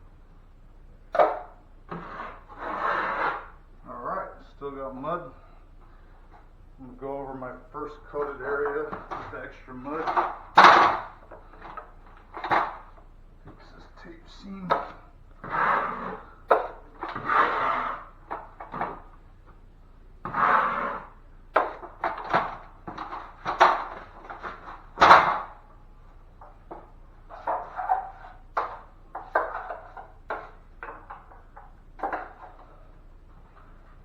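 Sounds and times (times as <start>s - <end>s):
drywall knife scraping compound: 1.2s - 3.6s, 7.4s - 19.1s, 20.2s - 25.6s, 26.4s - 33.0s.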